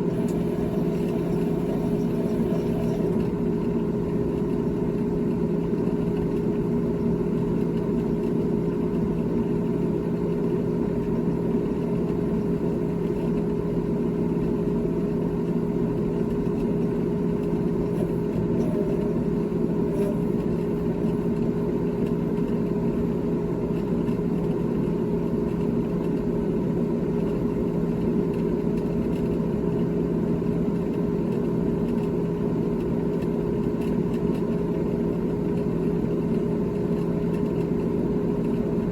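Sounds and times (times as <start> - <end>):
refrigerator humming: 0.0 - 22.4.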